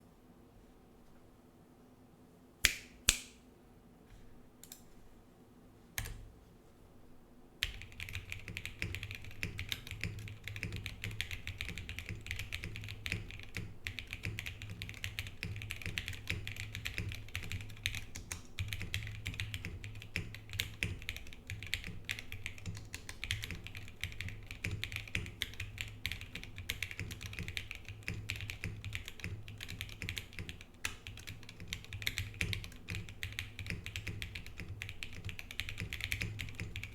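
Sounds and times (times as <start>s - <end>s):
mechanical keyboard typing: 7.6s - 36.9s.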